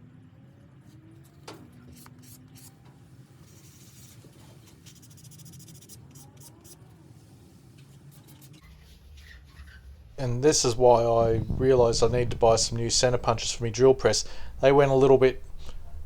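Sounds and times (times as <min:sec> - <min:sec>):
scratching and rubbing handling noises: 0:00.9 - 0:16.0
low hum: 0:10.2 - 0:16.0.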